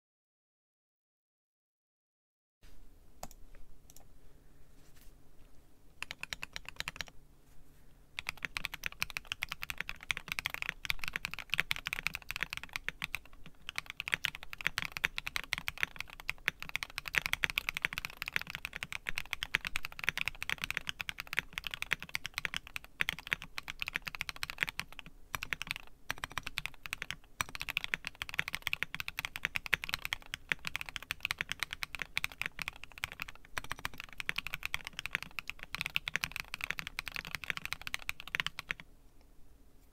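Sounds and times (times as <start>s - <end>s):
mechanical keyboard typing: 6.0s - 7.1s, 8.2s - 38.8s.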